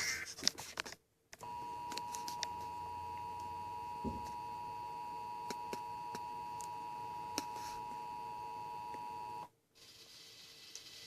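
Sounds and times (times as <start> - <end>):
steady two-tone alarm: 1.4 - 9.5.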